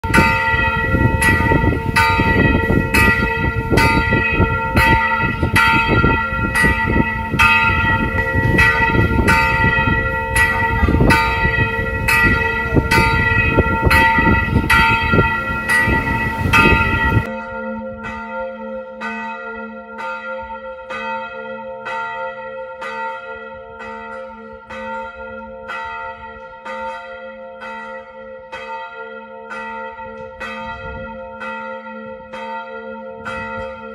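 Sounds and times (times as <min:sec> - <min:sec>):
heavy low rumble: 0:00.0 - 0:17.3
church bell ringing: 0:00.0 - 0:33.9.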